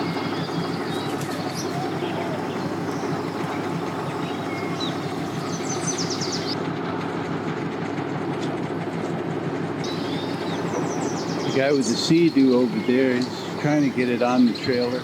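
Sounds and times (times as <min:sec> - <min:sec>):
bird chirps: 0:00.0 - 0:06.6, 0:09.9 - 0:15.0
boat motors rumbling: 0:00.0 - 0:15.0.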